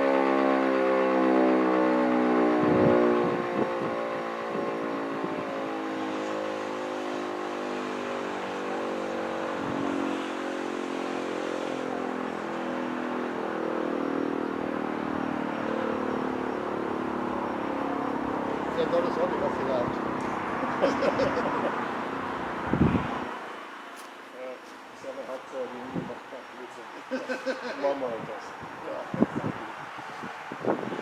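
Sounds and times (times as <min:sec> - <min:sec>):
mechanical motor siren winding down: 0:00.0 - 0:20.0.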